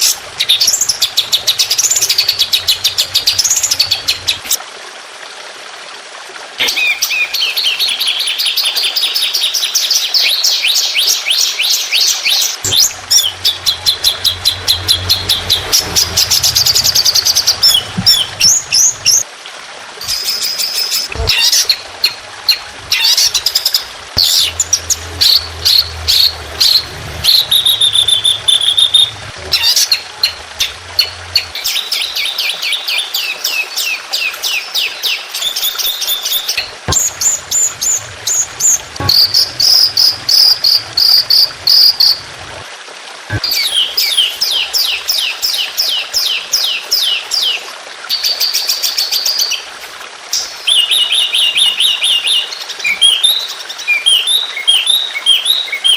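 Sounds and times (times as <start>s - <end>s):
songbird chirps and trills: 0.0s - 4.6s, 6.6s - 19.2s, 20.0s - 42.6s.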